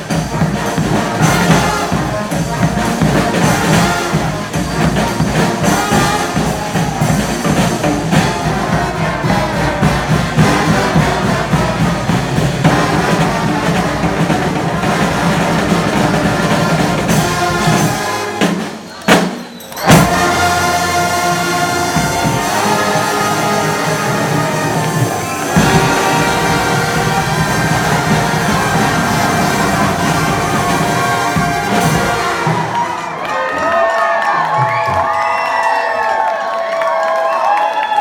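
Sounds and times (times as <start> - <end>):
loud drum hits: 0.0 - 18.5, 19.9 - 33.1
street band playing loud music: 0.0 - 33.3.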